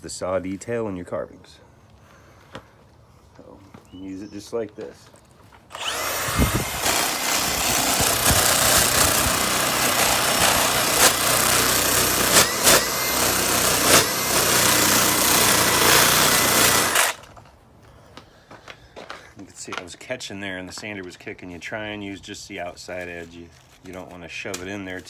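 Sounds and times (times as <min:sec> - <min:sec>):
flap sander whirring on wood: 0:05.7 - 0:17.2.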